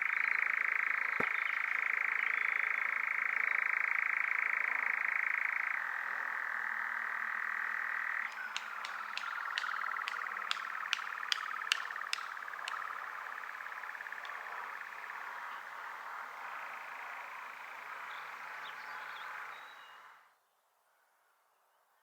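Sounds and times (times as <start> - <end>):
sharp clicks: 8.3 - 12.9.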